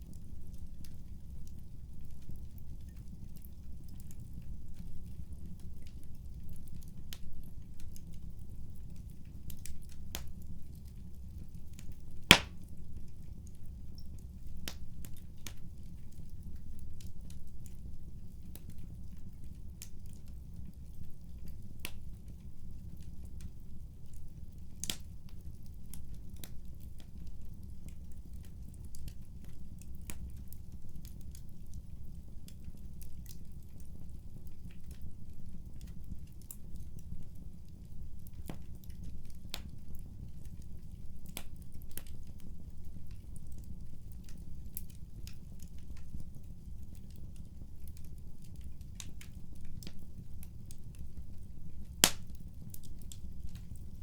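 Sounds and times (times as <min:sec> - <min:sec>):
wood fire crackling: 0:05.2 - 0:54.0
sharp pops of fire: 0:12.3 - 0:12.6, 0:52.0 - 0:52.4.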